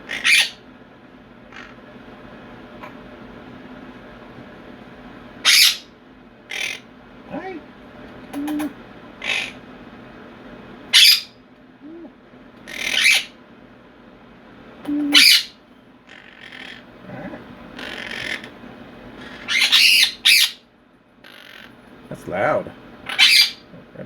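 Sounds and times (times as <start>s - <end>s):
parrots screeching: 0.0s - 0.6s, 1.5s - 1.8s, 5.4s - 5.9s, 6.5s - 7.5s, 8.4s - 9.6s, 10.9s - 11.4s, 12.6s - 13.4s, 14.9s - 21.8s, 23.0s - 23.7s.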